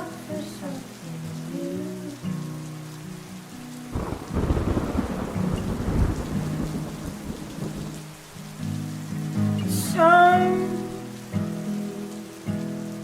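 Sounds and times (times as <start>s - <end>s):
steady rain: 0.0s - 13.0s
thunder rolling: 3.9s - 8.0s.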